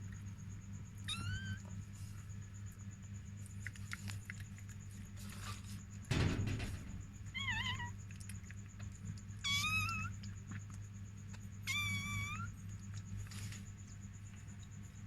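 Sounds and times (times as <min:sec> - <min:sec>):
steady low hum: 0:00.0 - 0:15.0
puppy crying with squeals: 0:01.1 - 0:01.6.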